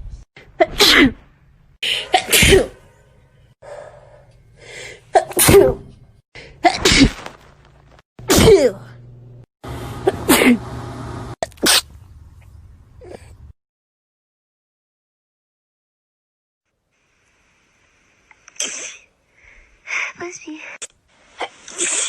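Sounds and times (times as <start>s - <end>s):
people sneezing: 18.6s - 19.1s.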